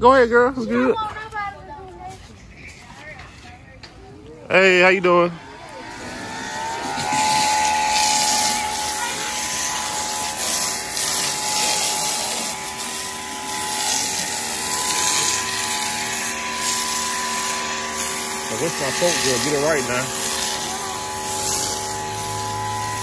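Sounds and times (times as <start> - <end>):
pressure washer motor whine: 4.7 - 23.0
water spray hissing: 6.5 - 23.0.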